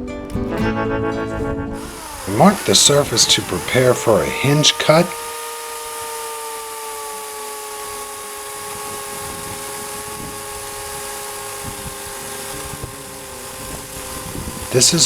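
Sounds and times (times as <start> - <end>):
electric chainsaw whine: 0.6 - 15.0.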